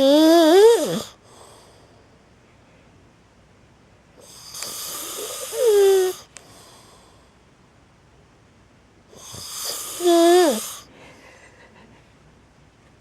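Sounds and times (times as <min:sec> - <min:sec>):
man snoring: 0:00.0 - 0:01.2, 0:04.2 - 0:06.3, 0:09.2 - 0:10.9
quiet breathing: 0:01.1 - 0:03.0, 0:04.2 - 0:07.6.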